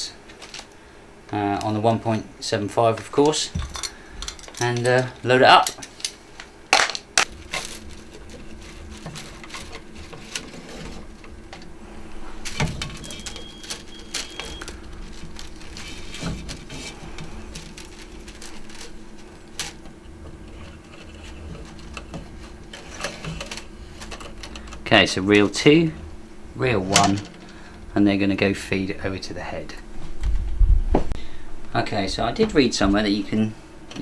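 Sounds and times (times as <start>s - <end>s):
steady low hum: 0.0s - 34.0s
rustling: 7.2s - 28.1s.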